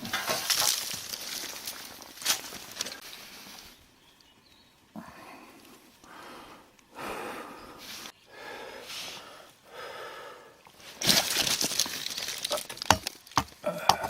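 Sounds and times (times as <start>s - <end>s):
loud crunching and rustling: 0.0s - 3.7s, 10.8s - 13.9s
person breathing heavily: 4.9s - 10.7s, 13.6s - 14.0s.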